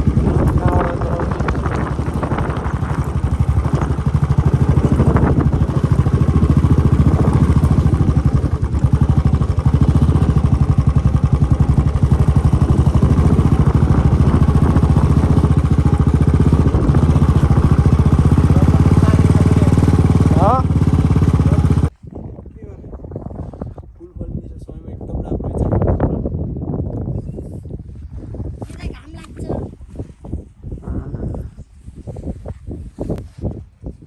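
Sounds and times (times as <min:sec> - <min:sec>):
vehicle engine running: 0:00.0 - 0:21.9.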